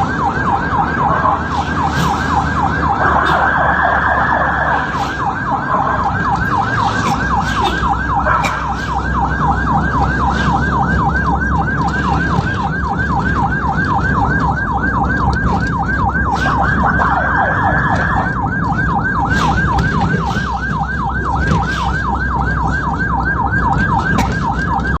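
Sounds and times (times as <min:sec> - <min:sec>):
ambulance siren yelping: 0:00.0 - 0:25.0
vehicle engine and road rumble: 0:00.0 - 0:25.0.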